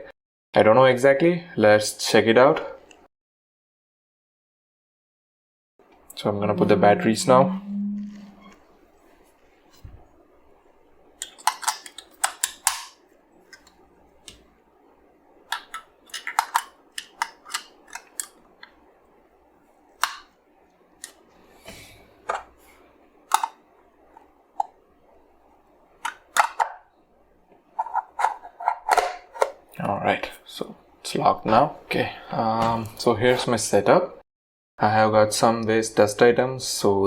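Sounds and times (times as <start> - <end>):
plastic clicks and clatter: 15.5 - 18.8.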